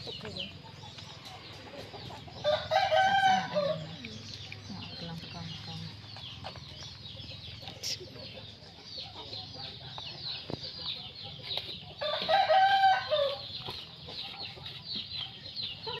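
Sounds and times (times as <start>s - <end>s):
rooster crowing: 2.4s - 3.8s, 12.0s - 13.4s.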